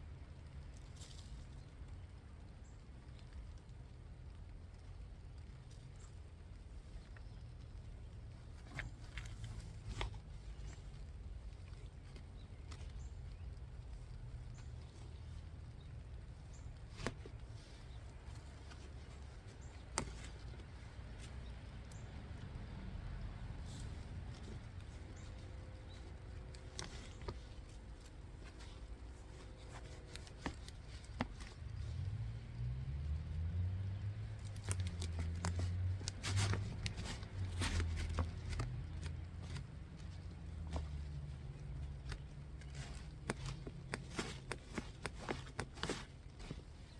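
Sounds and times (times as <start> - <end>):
low steady rumble: 0.0 - 46.9
soil scraping and rustling: 23.3 - 46.9.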